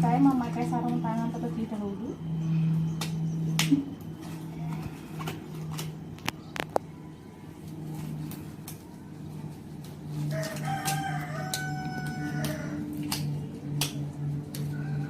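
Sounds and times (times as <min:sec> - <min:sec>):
steady low hum: 0:00.0 - 0:15.0
rooster crowing: 0:10.1 - 0:13.3, 0:14.2 - 0:15.0.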